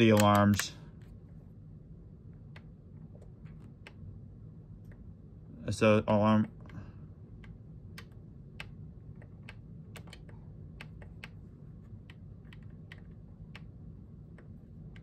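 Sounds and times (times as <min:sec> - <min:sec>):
plastic buttons clicking: 0:00.0 - 0:00.8.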